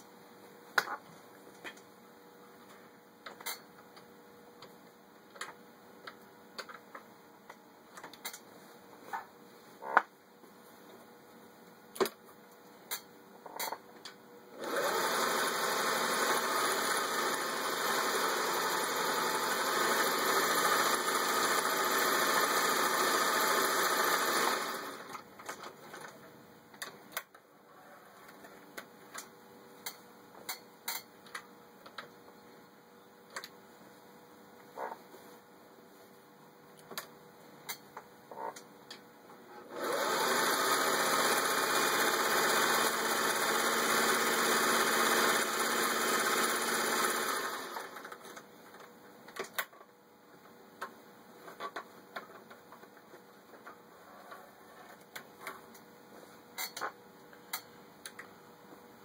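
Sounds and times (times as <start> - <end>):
sewing machine running: 14.6 - 25.2, 39.6 - 48.2.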